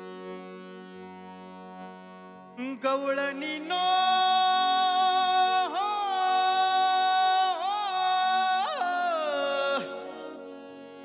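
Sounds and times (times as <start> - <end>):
person singing devotional song: 2.6 - 11.0.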